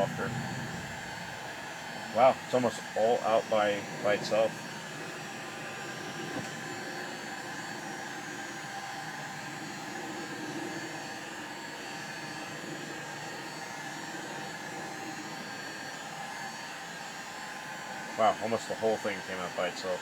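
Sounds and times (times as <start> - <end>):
heat gun fan blowing: 0.0 - 20.0.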